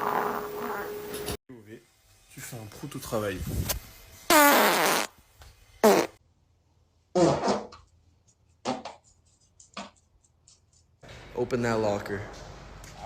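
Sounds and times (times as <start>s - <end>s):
person farting: 0.0s - 0.9s, 4.3s - 5.2s, 5.8s - 6.2s, 7.1s - 7.9s, 8.6s - 9.0s.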